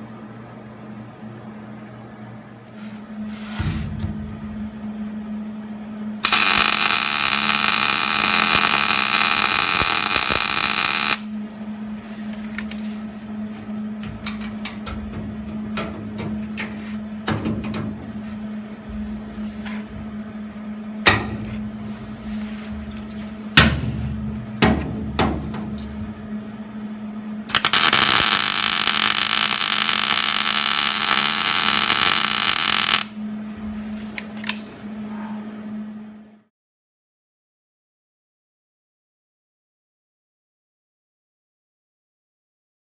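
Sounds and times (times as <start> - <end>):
steady low hum: 0.0 - 36.4
welding crackling hiss: 6.2 - 11.4, 27.5 - 33.2.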